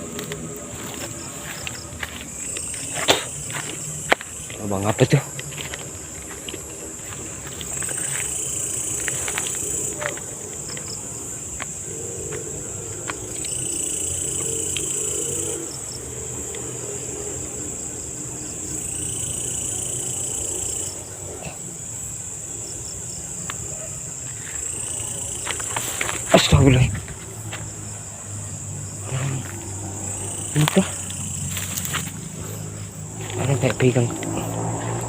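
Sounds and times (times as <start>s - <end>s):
night insects trilling: 0.0s - 35.0s
handling clicks and rustles: 30.6s - 35.0s.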